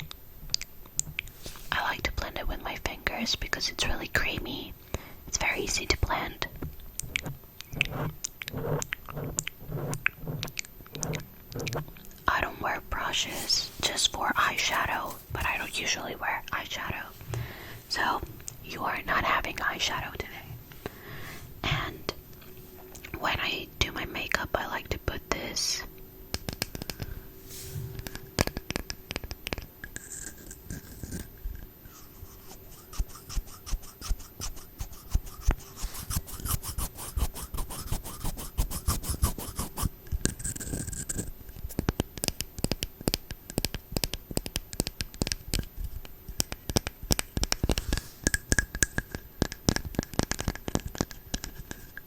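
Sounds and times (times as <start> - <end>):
brushing and scratching on microphone: 1.4 - 1.8, 5.4 - 15.7, 30.0 - 42.4.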